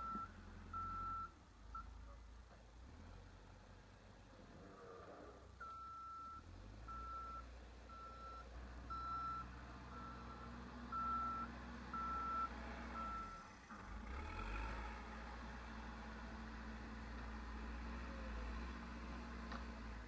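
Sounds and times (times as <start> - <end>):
diesel engine running: 5.8 - 20.0.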